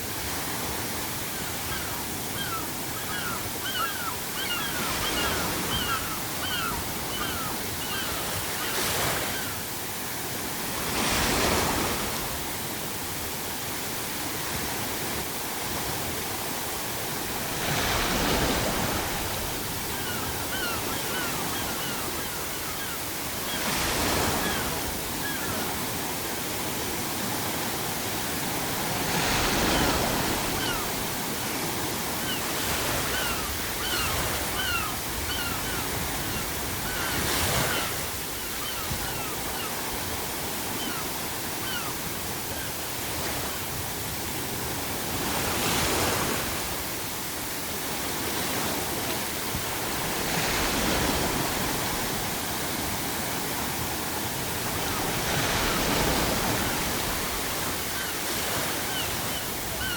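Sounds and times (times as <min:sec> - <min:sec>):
sea waves breaking: 0:00.0 - 0:59.9
seagulls calling: 0:01.2 - 0:09.7, 0:17.6 - 0:26.1, 0:29.1 - 0:42.9, 0:54.5 - 0:59.9.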